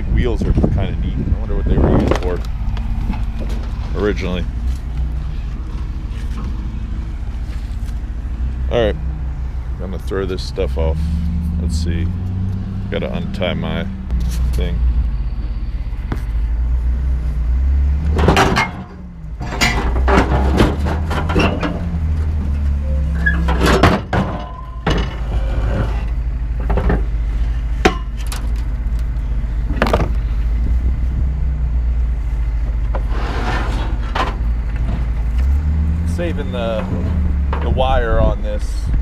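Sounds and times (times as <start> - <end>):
low rumble: 0.0 - 39.0
scrap metal clanking: 18.1 - 27.1, 33.0 - 38.0.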